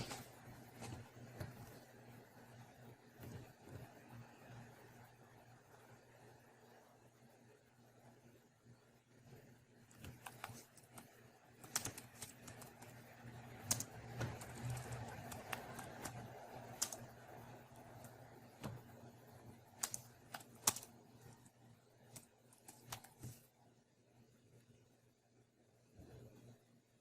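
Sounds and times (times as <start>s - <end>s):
faint low hum: 0.0s - 27.0s
laptop keyboard typing: 9.9s - 23.5s.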